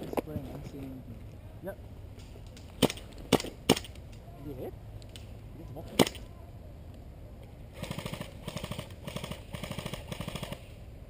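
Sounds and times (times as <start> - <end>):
airsoft gun sharp crack: 2.7 - 4.0, 6.0 - 6.2
airsoft gun full-auto fire: 7.8 - 10.7.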